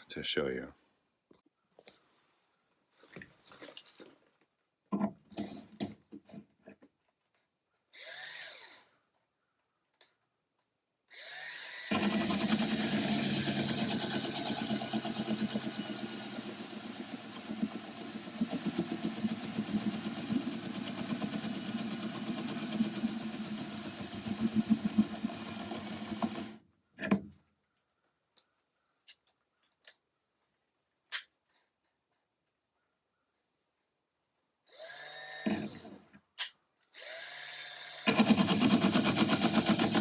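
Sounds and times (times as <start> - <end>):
cordless drill boring metal: 11.1 - 26.6, 34.7 - 35.9, 37.0 - 40.0.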